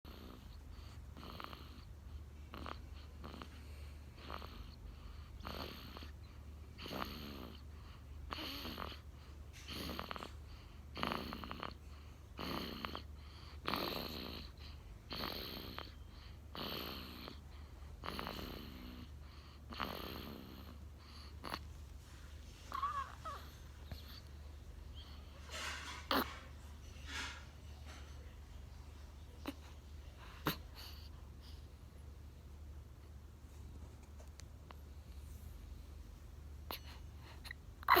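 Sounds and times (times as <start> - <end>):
baby snoring: 0.1 - 21.7, 22.6 - 24.3, 24.9 - 26.5, 30.4 - 31.2, 36.7 - 38.0.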